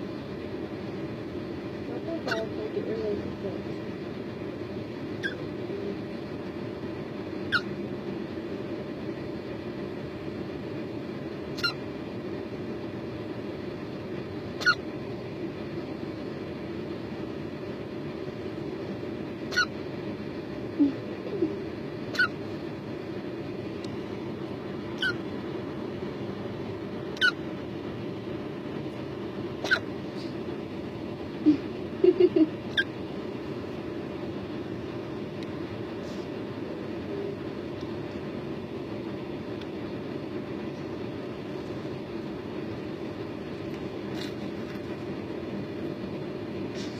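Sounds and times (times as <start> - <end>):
steady low hum: 0.0 - 46.9
steady rumbling noise: 0.0 - 46.9
small sharp hiccups: 29.6 - 30.3.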